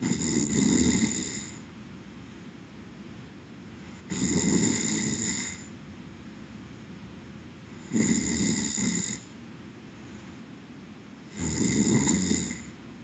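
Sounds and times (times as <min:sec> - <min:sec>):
person snoring: 0:00.0 - 0:01.6, 0:03.9 - 0:05.7, 0:07.8 - 0:09.3, 0:11.3 - 0:12.8
quiet breathing: 0:03.7 - 0:05.8, 0:07.6 - 0:10.6.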